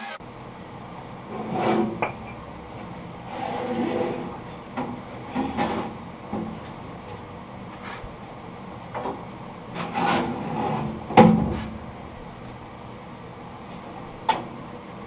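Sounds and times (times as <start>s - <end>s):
parts knocking and scraping: 1.3s - 8.1s, 8.8s - 11.9s
heavy clunk: 9.8s - 11.9s.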